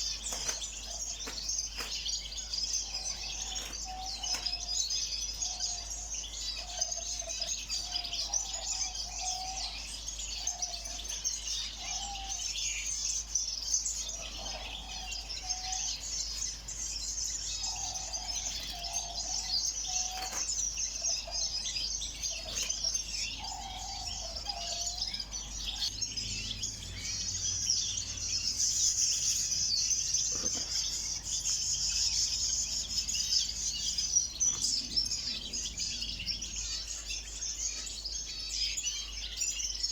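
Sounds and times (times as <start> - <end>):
birds chirping and chattering: 0.0 - 39.9.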